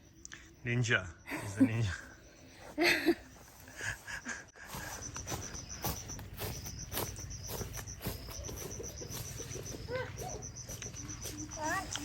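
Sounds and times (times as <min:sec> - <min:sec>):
insect chirping rapidly: 0:00.0 - 0:12.0
scattered clicks: 0:11.7 - 0:12.0.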